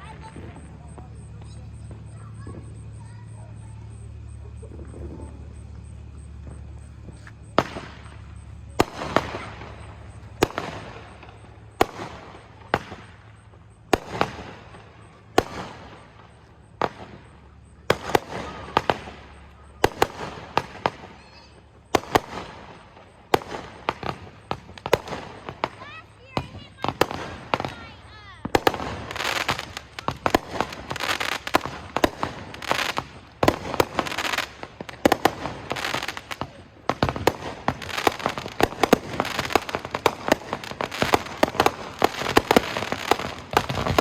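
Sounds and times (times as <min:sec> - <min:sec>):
steady low hum: 0:00.0 - 0:17.9
fireworks bangs with crackling: 0:00.0 - 0:44.0.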